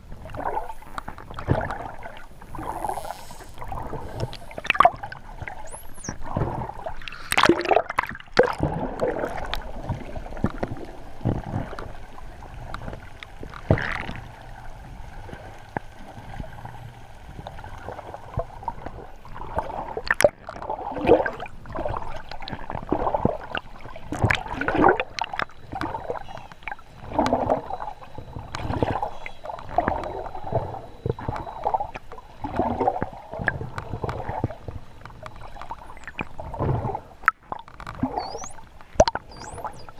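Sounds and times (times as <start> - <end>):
dolphin buzzing pulsed calls: 0.0 - 7.5, 10.1 - 20.0, 24.8 - 39.9
dolphin rising whistles: 5.5 - 6.2, 38.1 - 38.6, 39.2 - 39.9
dolphin clicks: 33.0 - 36.4, 37.2 - 39.9.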